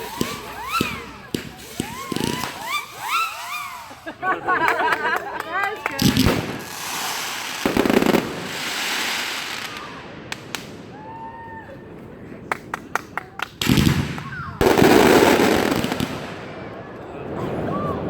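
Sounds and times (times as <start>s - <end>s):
fireworks bangs and crackle: 0.0s - 18.0s
sharp firework pops: 0.1s - 3.2s, 9.7s - 10.8s, 12.5s - 16.3s.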